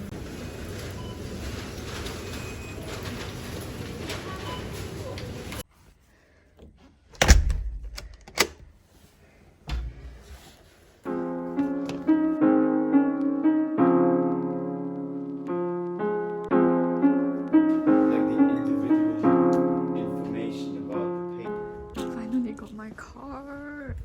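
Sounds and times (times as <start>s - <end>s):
background piano music: 11.0s - 23.2s.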